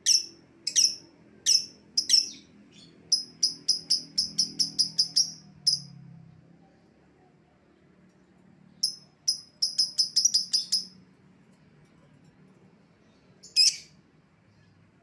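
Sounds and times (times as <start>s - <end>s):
bird chirping: 0.0s - 6.0s, 8.8s - 11.0s, 13.0s - 14.8s.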